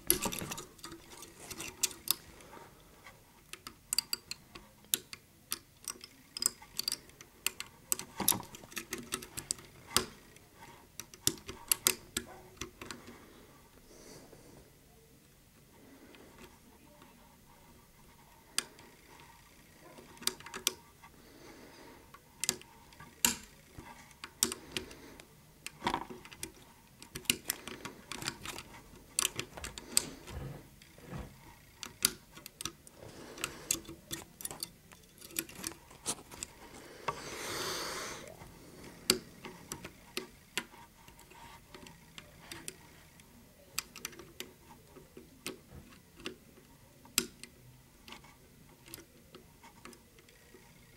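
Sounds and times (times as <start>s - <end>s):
lock pick clicking in lock: 3.6s - 10.2s.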